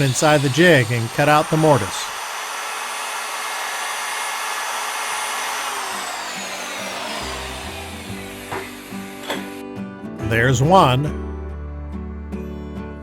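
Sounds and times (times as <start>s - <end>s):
router motor whine: 0.0s - 9.7s
guitar music: 7.2s - 13.0s.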